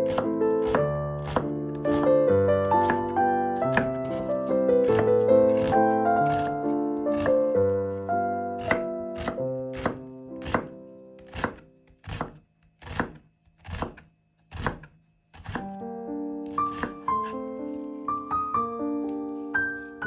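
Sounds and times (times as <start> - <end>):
knife chopping on cutting board: 0.0 - 7.5, 8.6 - 15.8, 16.5 - 17.4
piano music: 0.0 - 11.8, 15.6 - 20.0.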